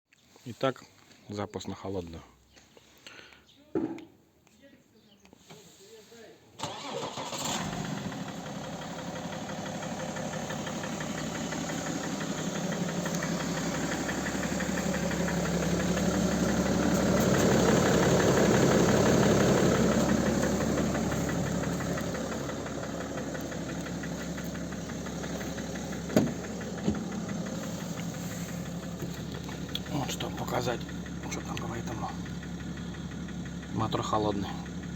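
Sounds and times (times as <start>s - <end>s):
diesel engine idling with knock: 7.6s - 34.9s.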